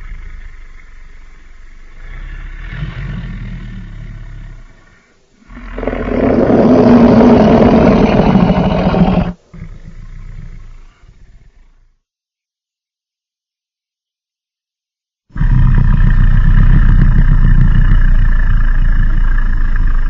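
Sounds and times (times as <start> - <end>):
rumbling growl: 0.0 - 12.0, 15.4 - 20.0
dinosaur roar: 1.9 - 11.8, 15.4 - 20.0.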